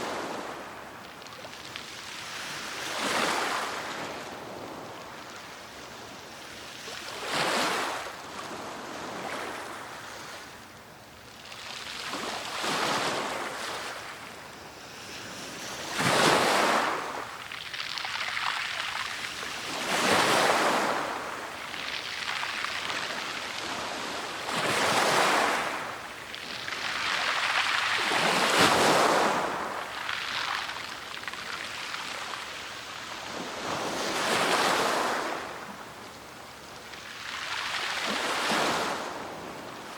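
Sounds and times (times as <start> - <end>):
sea surf breaking on shore: 15.0 - 35.9.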